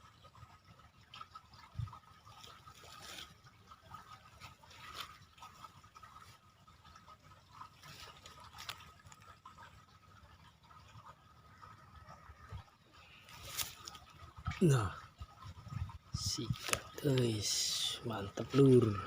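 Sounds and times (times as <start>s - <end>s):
faint trickling water: 0.0s - 19.0s
water splashes and drips: 0.0s - 19.0s.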